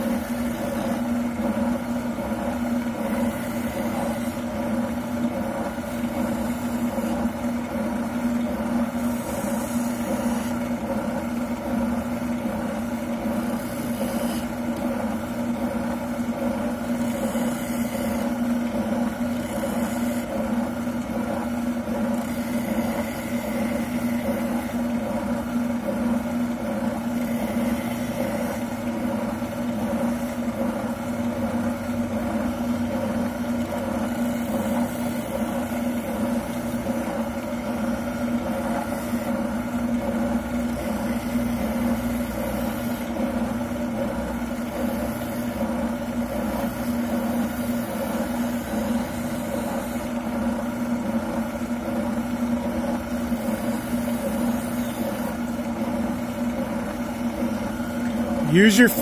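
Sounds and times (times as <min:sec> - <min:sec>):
oscillating sander humming: 0:00.0 - 0:30.6.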